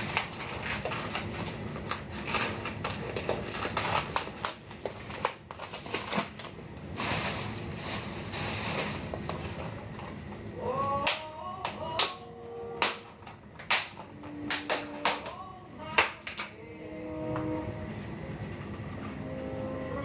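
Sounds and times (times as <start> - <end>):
crinkly rustles: 0.0 - 10.5, 17.6 - 20.0.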